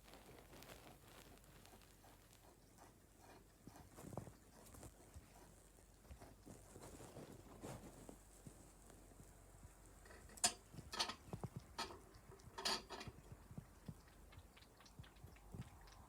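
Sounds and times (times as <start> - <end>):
light clicks and taps: 10.0 - 16.0
small faint ticks: 10.0 - 16.0.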